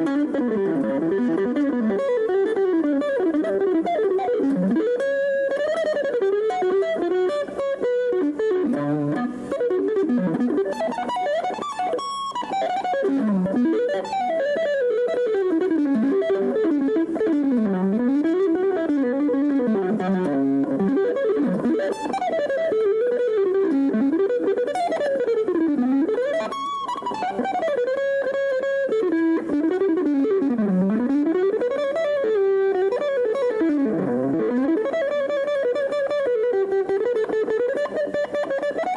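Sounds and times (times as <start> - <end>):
fast guitar melody: 0.0 - 38.9.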